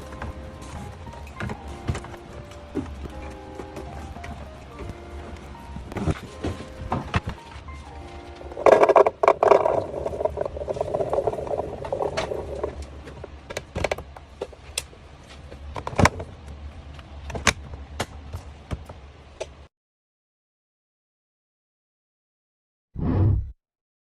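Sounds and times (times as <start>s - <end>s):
containers clicking and knocking: 8.5s - 14.0s.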